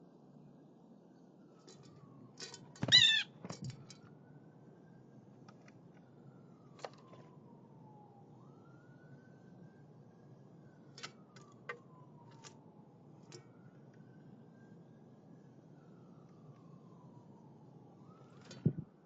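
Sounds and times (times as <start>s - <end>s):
wavering bird call: 2.8s - 3.4s.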